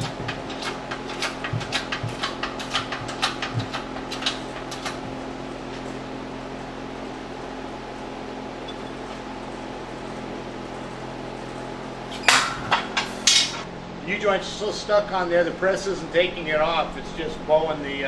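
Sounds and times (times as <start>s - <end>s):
shop press clicking: 0.0s - 5.0s
steady low hum: 0.0s - 18.0s.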